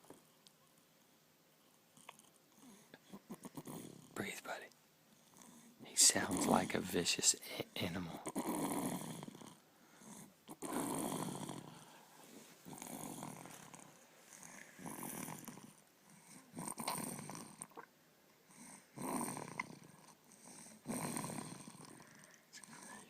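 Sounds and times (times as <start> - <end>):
heavy rasping snoring: 2.6 - 4.3, 5.3 - 11.9, 12.6 - 17.7, 18.5 - 23.0.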